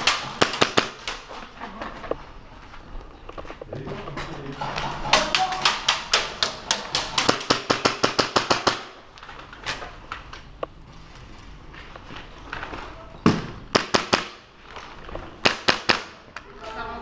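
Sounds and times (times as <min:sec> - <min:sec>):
airsoft gun firing: 0:00.0 - 0:01.2, 0:05.3 - 0:09.0, 0:13.3 - 0:14.5, 0:15.4 - 0:16.3.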